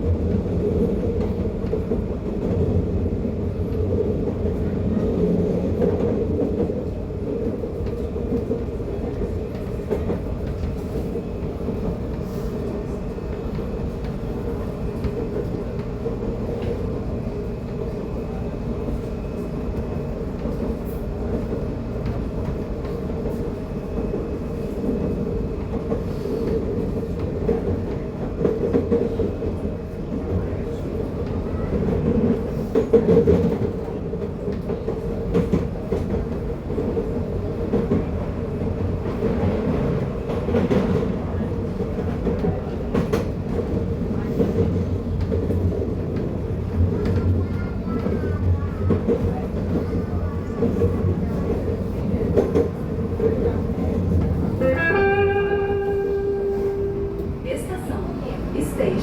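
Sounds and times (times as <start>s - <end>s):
faint clicks from rails: 0.0s - 57.4s
train wheel rumble: 0.0s - 59.0s
train motor hum: 52.4s - 59.0s.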